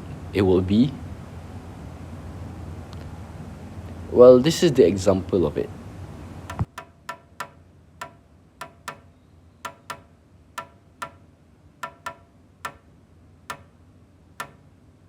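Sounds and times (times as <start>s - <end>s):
morse code clicks: 6.5s - 9.1s, 9.7s - 11.2s, 11.8s - 12.9s, 14.4s - 14.6s.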